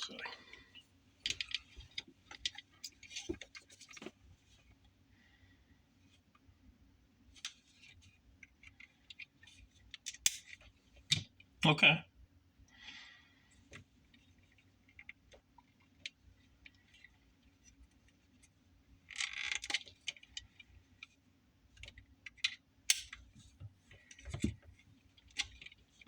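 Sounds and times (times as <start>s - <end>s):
small clicks and rattles of tools: 19.1s - 26.0s.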